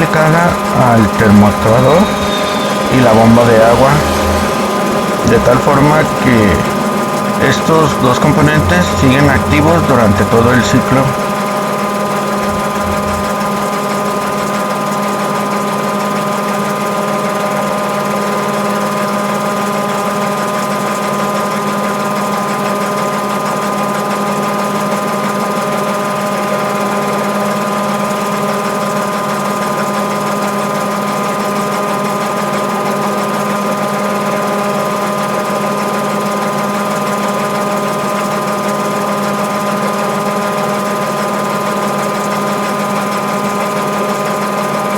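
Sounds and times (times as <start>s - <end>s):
washing machine spinning: 0.0s - 44.9s.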